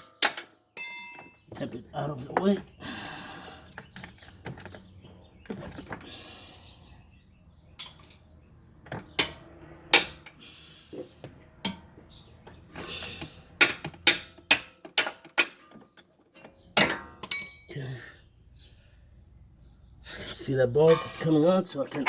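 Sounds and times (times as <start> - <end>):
hammer on metal bolt: 10.0 - 10.3, 13.6 - 15.6.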